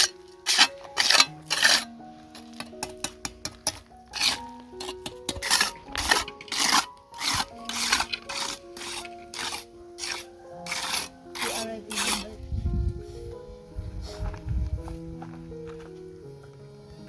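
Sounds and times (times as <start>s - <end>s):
rhythmic scraping on hard surface: 0.0s - 15.9s
background music with held notes: 0.0s - 17.0s.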